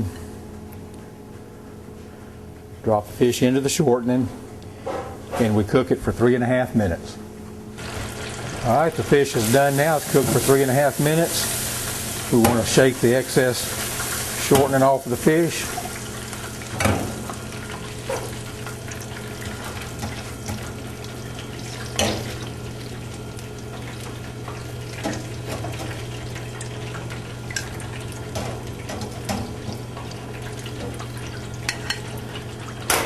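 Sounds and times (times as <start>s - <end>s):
constant low hum: 0.0s - 33.0s
oil sizzling in deep fryer: 7.8s - 33.0s.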